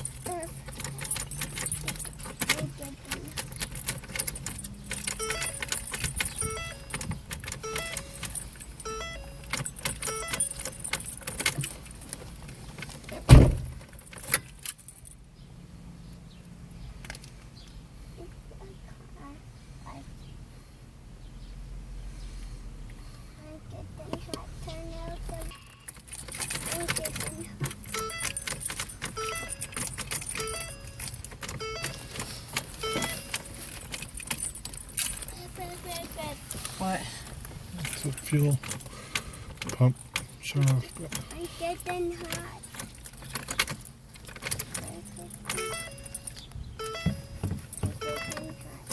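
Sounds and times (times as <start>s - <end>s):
sharp clicks and rattles: 0.0s - 15.1s, 24.0s - 48.9s
car keys jangling: 0.0s - 15.4s, 24.7s - 48.9s
short electronic tones: 5.1s - 10.8s, 27.9s - 31.0s, 31.6s - 33.7s, 45.6s - 48.9s
loud thump: 13.3s - 13.8s.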